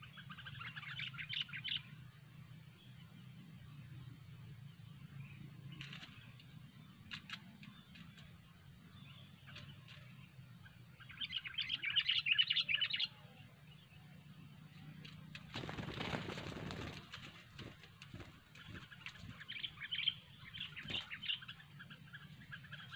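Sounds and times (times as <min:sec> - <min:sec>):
faint bird chirps: 0:00.0 - 0:22.9
wing flapping rustle: 0:05.8 - 0:06.2, 0:15.0 - 0:21.4.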